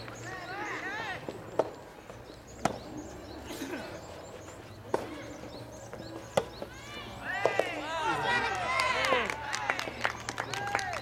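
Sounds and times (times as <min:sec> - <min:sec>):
faint shouts: 0:06.7 - 0:09.8
rackets hitting rubber ball: 0:07.4 - 0:07.8.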